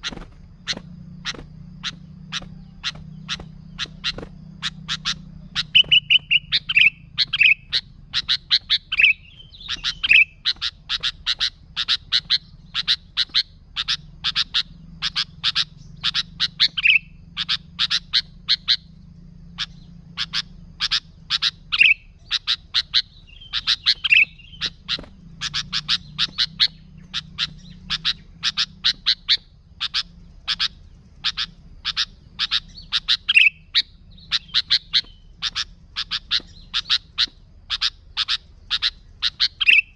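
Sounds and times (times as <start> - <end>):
bulbul chattering and warbling: 0.0 - 39.9
faint low hum: 0.0 - 39.9.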